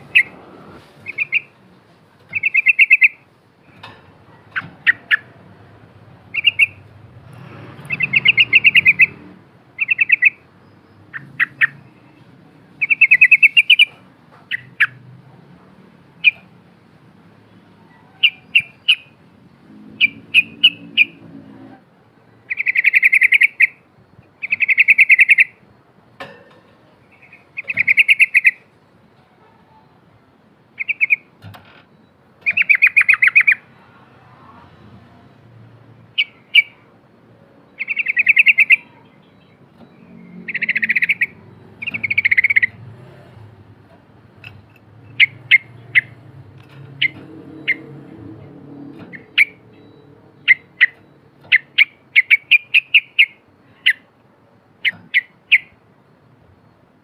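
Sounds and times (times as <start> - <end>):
bird rattling song: 0.0 - 1.6, 2.2 - 15.0, 16.2 - 16.5, 18.2 - 19.2, 19.8 - 21.2, 22.5 - 23.8, 24.4 - 25.6, 27.0 - 28.7, 30.7 - 33.7, 36.0 - 36.8, 37.7 - 54.1, 54.8 - 55.8
sharp bird chips: 1.0 - 1.6, 2.3 - 5.4, 6.3 - 15.0, 24.4 - 25.6, 26.9 - 28.8, 32.4 - 33.8, 36.1 - 36.8, 37.7 - 43.5, 44.2 - 54.1.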